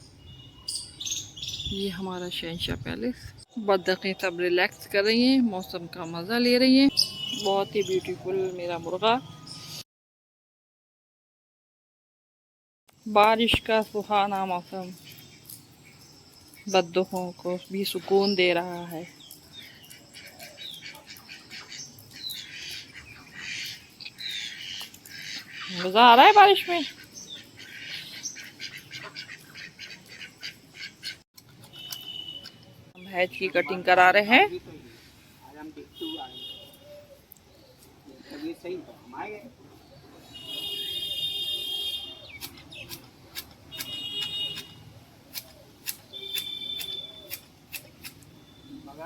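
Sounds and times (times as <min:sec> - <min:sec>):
birds whistling calls: 0:00.0 - 0:02.9, 0:06.8 - 0:09.8, 0:15.0 - 0:34.2, 0:36.0 - 0:37.8, 0:39.9 - 0:43.0, 0:43.7 - 0:47.5
shears snipping hedge: 0:42.2 - 0:48.4.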